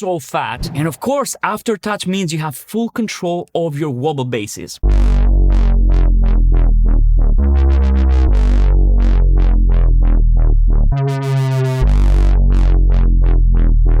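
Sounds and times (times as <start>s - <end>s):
wobble bass synthesizer: 4.8s - 14.0s.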